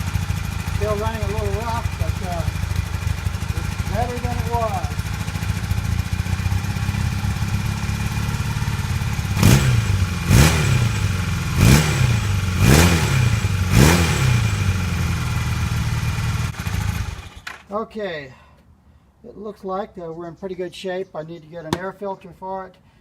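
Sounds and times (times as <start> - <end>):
engine revving: 0.0 - 17.4
motorcycle engine idling rough: 0.0 - 17.6.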